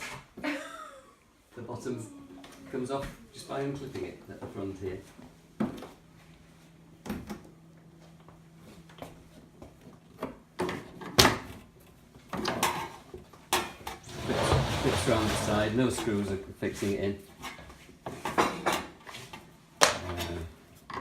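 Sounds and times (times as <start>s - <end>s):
plastic panel scraping: 14.0s - 15.8s.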